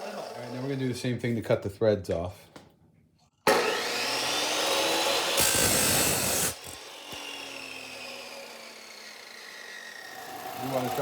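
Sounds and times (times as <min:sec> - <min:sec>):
chop saw cutting steel: 0:03.5 - 0:11.0
saw wheel winding down whine: 0:03.7 - 0:11.0.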